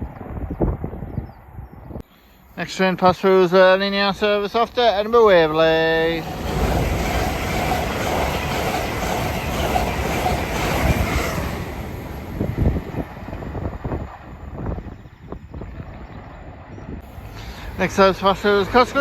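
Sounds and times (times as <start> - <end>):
train rushing past: 2.6 - 15.0, 17.0 - 19.0.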